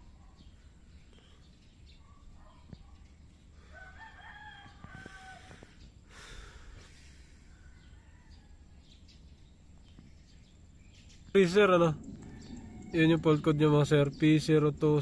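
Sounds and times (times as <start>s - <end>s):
rooster crowing: 3.6s - 5.7s, 7.5s - 8.9s, 12.1s - 13.5s.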